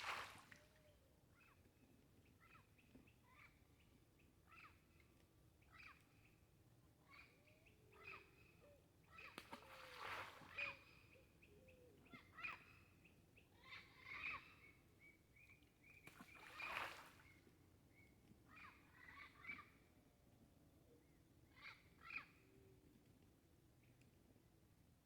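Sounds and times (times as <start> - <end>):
faint birds chirping: 0.5 - 20.0.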